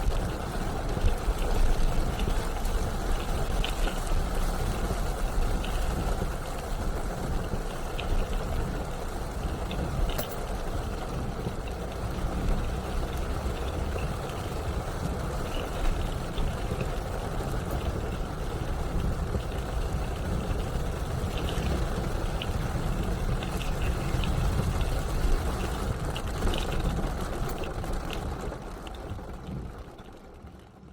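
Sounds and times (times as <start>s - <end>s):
hiss of rain and spray: 0.0s - 29.8s
road and engine rumble: 0.0s - 30.9s
light ticks: 0.1s - 30.2s.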